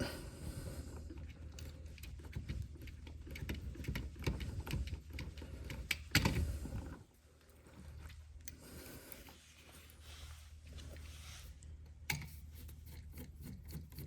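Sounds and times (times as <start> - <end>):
small clicks and rattles: 0.9 - 9.4.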